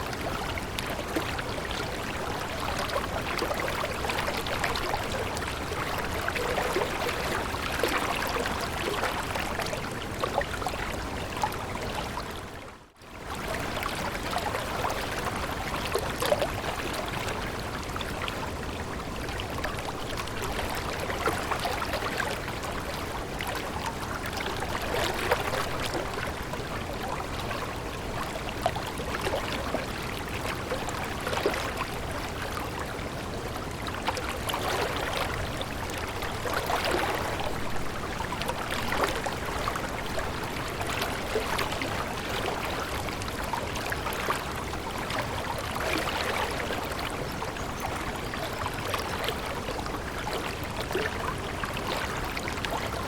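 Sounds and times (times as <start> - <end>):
stream water flowing: 0.0 - 53.0
small water splashes: 19.5 - 53.0.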